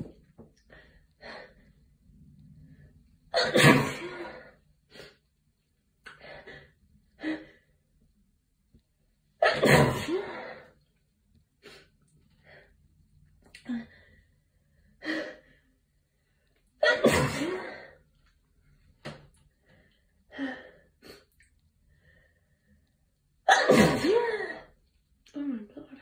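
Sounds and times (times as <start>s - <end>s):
person sneezing: 3.4s - 4.4s, 9.4s - 10.5s, 16.8s - 17.9s, 23.5s - 24.6s.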